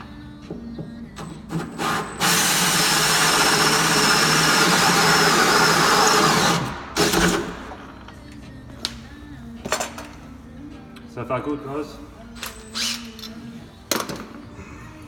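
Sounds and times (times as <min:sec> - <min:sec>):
power drill with hole saw: 0:01.8 - 0:07.5.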